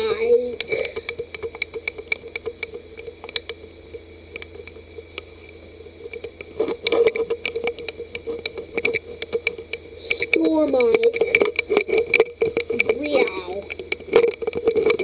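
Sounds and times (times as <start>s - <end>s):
steady hum: 0.0s - 15.0s
light clicks and taps: 0.6s - 15.0s.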